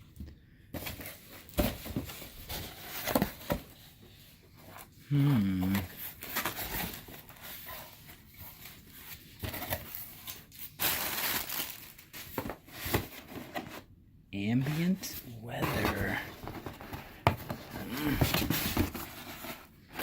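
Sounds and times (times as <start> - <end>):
cardboard and packing rustling: 0.0 - 14.0, 14.6 - 20.0
low voice-like sound: 5.1 - 5.9
cardboard tearing: 5.5 - 13.8.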